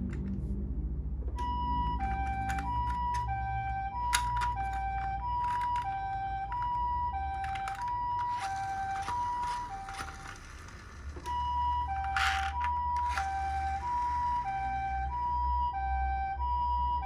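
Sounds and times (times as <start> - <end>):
sharp clicks and knocks: 1.3 - 14.8
toy ambulance two-tone siren: 1.4 - 17.0.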